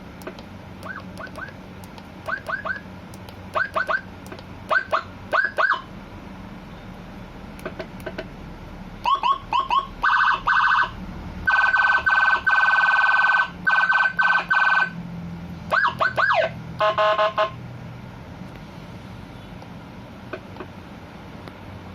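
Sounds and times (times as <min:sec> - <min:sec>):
low steady hum: 0:00.0 - 0:21.9
electronic siren chirps and warbles: 0:00.8 - 0:01.6, 0:02.2 - 0:02.9, 0:03.5 - 0:04.1, 0:04.7 - 0:05.9, 0:09.0 - 0:15.0, 0:15.7 - 0:17.5.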